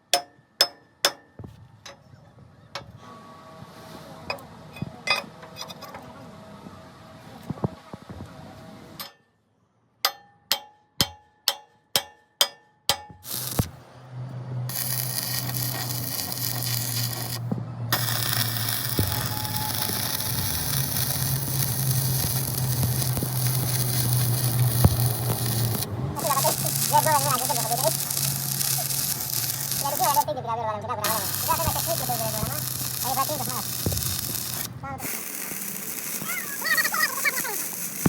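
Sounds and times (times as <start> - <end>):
loud steady hiss: 13.3 - 13.8, 14.7 - 30.3, 31.0 - 38.0
low buzz: 13.3 - 30.3, 31.0 - 36.0.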